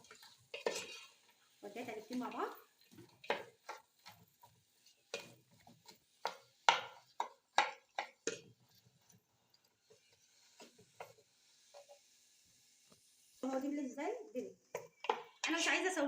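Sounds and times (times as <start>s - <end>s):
spoon scraping a frying pan: 0.0s - 12.2s, 14.6s - 15.7s.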